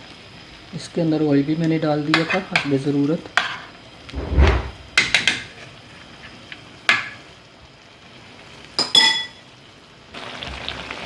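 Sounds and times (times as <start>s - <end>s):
chicken frying in oil: 0.0s - 4.1s, 5.0s - 11.0s
pot lid clinking: 8.8s - 9.4s.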